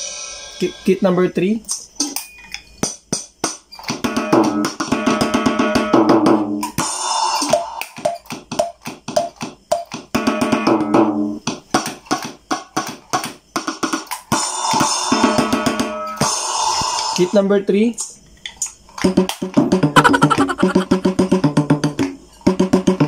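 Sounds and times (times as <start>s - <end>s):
electronic drum strikes: 2.8s - 11.6s
held pitched tones: 20.0s - 21.2s.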